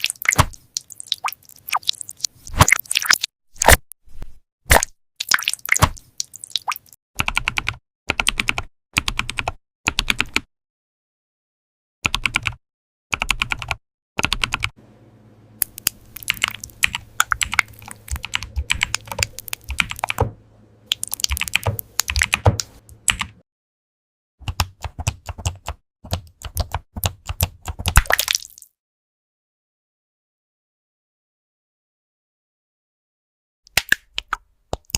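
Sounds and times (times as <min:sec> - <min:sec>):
computer keyboard typing: 0:07.2 - 0:10.5, 0:12.1 - 0:12.6, 0:13.2 - 0:14.7, 0:15.6 - 0:20.3, 0:20.9 - 0:23.4, 0:24.4 - 0:28.0.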